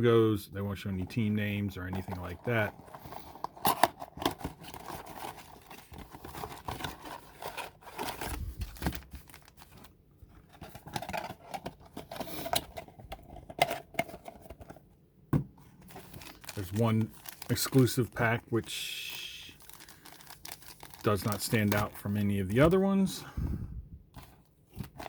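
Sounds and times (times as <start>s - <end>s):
wrappers crinkling and rustling: 2.1s - 10.6s, 15.8s - 22.6s.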